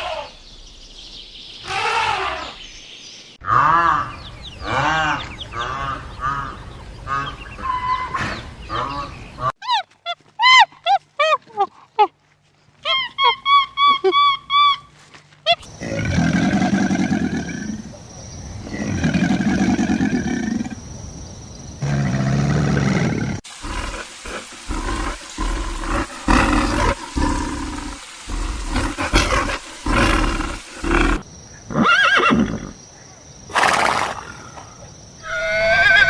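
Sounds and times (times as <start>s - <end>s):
deep animal grunting calls: 15.6s - 17.9s, 18.6s - 20.8s.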